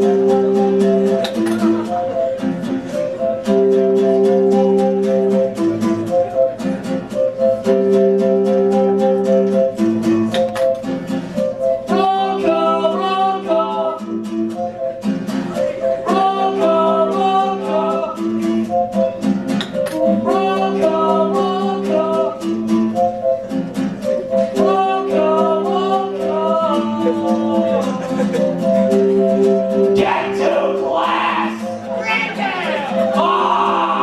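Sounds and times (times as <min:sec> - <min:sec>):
strummed guitar: 0:00.0 - 0:34.0
person singing: 0:11.8 - 0:14.8, 0:15.5 - 0:19.0, 0:20.0 - 0:23.1, 0:24.1 - 0:34.0.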